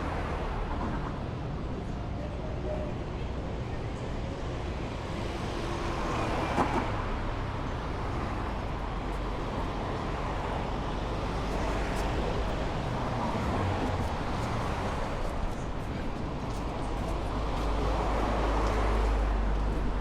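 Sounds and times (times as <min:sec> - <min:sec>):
cars passing: 0:04.3 - 0:20.0.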